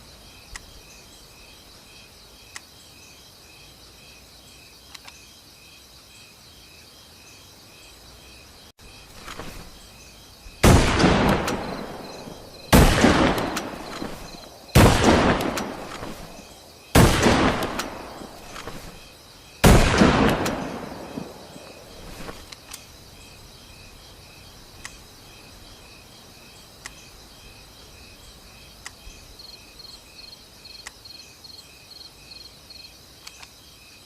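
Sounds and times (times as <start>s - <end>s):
rifle shots with rolling echo: 10.6s - 19.0s, 19.6s - 22.4s.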